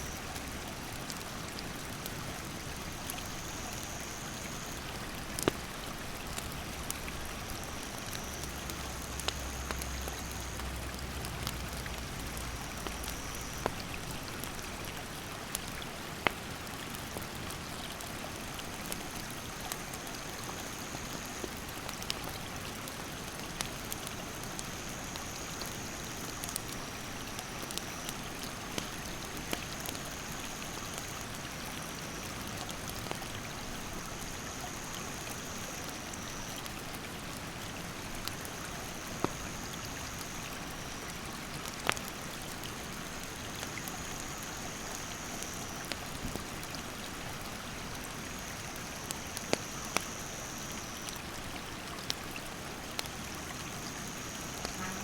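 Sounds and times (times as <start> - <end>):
campfire crackling: 0.0 - 55.0
insect trilling: 53.9 - 55.0.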